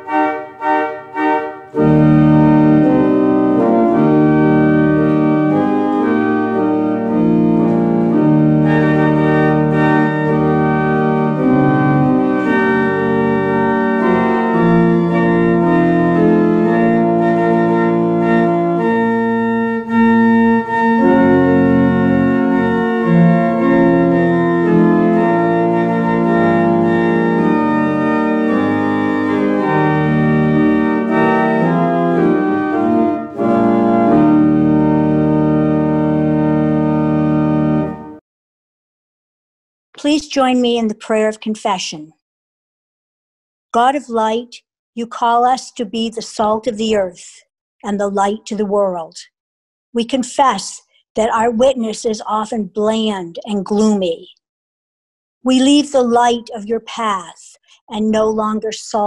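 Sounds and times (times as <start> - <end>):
organ playing chords: 0.0 - 38.2.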